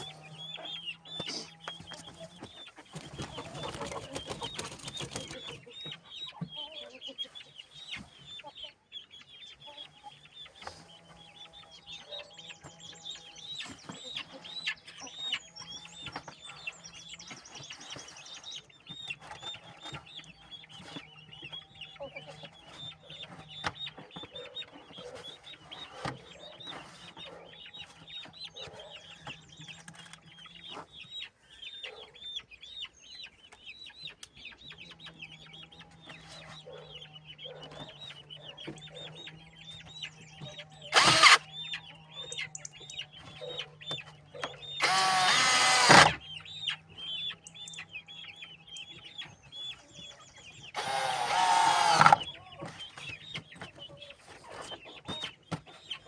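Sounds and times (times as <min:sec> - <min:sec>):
chickens clucking: 0:00.0 - 0:56.0.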